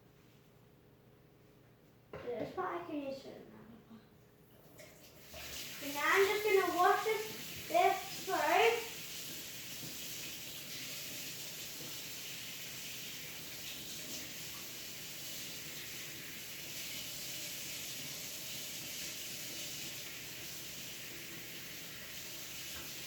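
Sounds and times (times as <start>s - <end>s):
tap water running into sink: 4.7s - 23.0s.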